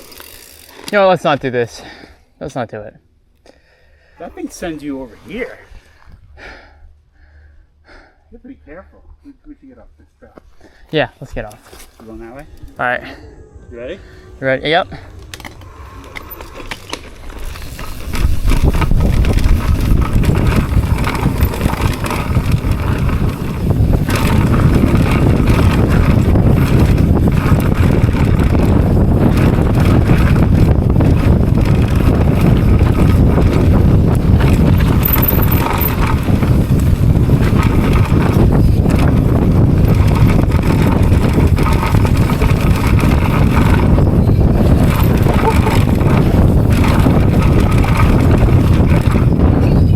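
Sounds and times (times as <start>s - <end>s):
bike rattling on rough trail: 0.0s - 2.0s, 10.4s - 13.0s, 14.9s - 49.9s
wind rushing over microphone: 10.8s - 49.9s.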